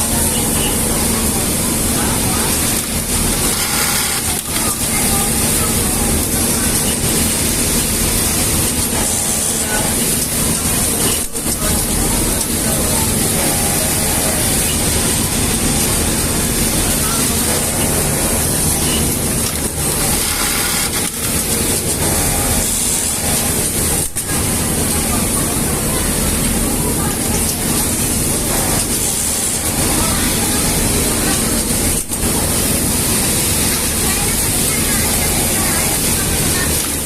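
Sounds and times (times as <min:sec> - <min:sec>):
faint voices: 0:00.0 - 0:37.0
industrial sewing machine running: 0:00.0 - 0:37.0.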